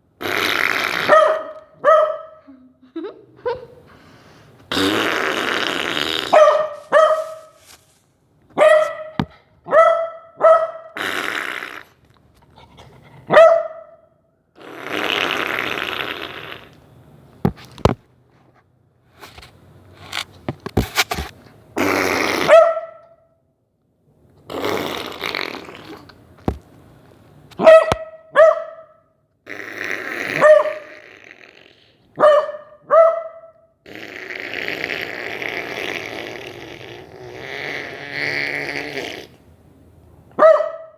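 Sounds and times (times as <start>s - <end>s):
puppy yelping barks: 1.1s - 2.4s, 6.3s - 7.6s, 8.6s - 11.0s, 13.3s - 14.0s, 22.4s - 23.2s, 27.6s - 29.0s, 30.4s - 30.9s, 32.2s - 33.6s, 40.4s - 40.9s
rasping snore: 33.9s - 39.4s.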